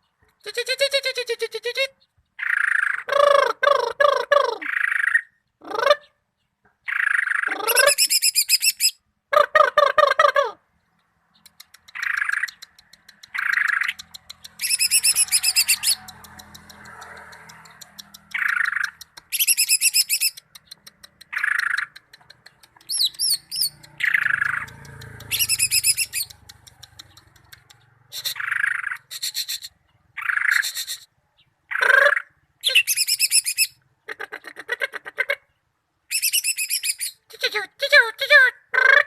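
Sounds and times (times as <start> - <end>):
bird singing with trills: 4.6 - 9.0, 10.8 - 33.8, 36.1 - 37.3.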